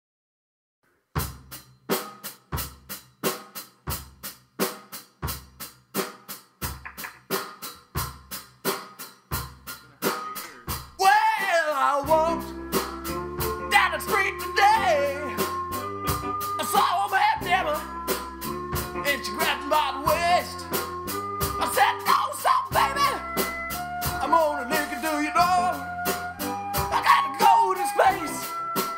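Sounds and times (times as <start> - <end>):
bass and band instruments: 1.2 - 28.9
drum kit beat: 1.2 - 28.9
person singing: 10.0 - 15.7, 16.5 - 17.9, 19.0 - 20.9, 21.5 - 23.4, 24.1 - 25.9, 26.8 - 28.6.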